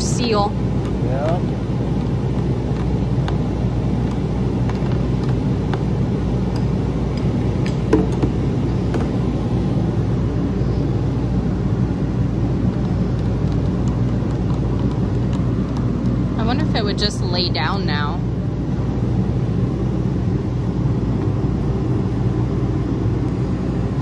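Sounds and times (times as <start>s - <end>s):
low mechanical hum: 0.0s - 24.0s.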